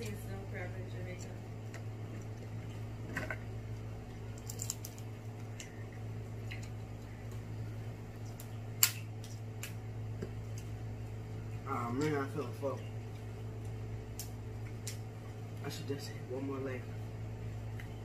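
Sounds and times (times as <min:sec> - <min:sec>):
steady low hum: 0:00.0 - 0:18.0
crab shells cracking: 0:04.3 - 0:07.4, 0:08.2 - 0:10.7, 0:13.6 - 0:15.1.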